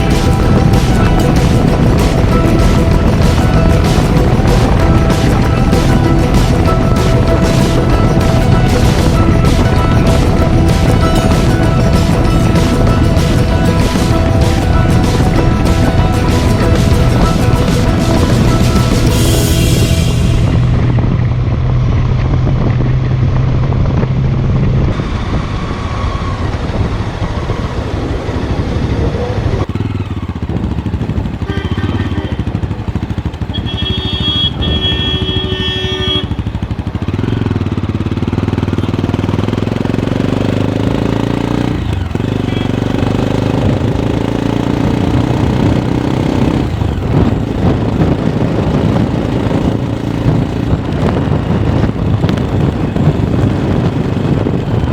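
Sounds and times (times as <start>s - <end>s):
steady high tone: 0.0s - 22.3s
motorcycle engine accelerating: 0.0s - 54.9s.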